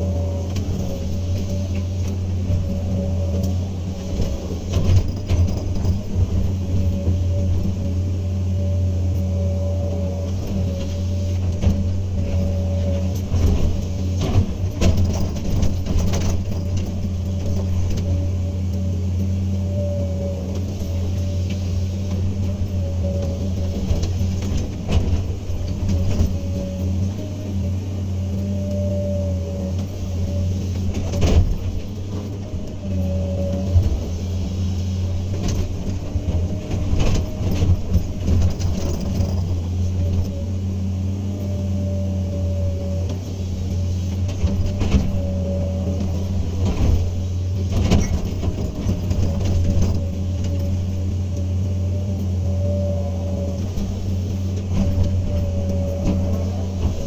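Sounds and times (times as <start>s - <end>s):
excavator diesel engine running: 0.0s - 57.0s
high whine: 0.0s - 57.0s.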